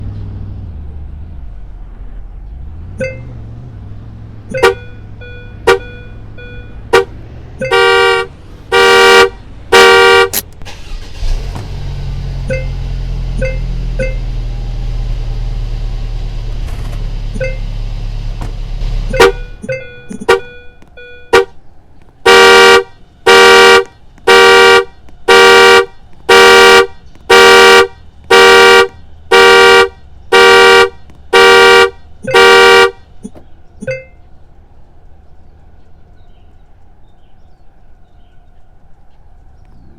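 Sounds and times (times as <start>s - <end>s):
car alarm chirps: 3.0s - 3.4s, 4.5s - 11.0s, 12.4s - 14.4s, 17.4s - 17.7s, 19.1s - 21.6s, 22.3s - 34.3s
car horn blasts: 4.5s - 11.2s, 12.5s - 12.8s, 13.4s - 14.3s, 17.4s - 17.7s, 19.1s - 21.6s, 22.2s - 34.1s.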